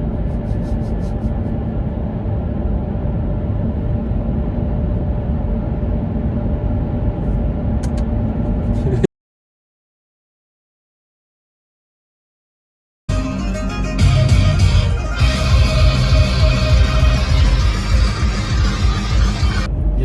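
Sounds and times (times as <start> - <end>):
vehicle engine hum: 0.0 - 9.1, 13.1 - 20.0.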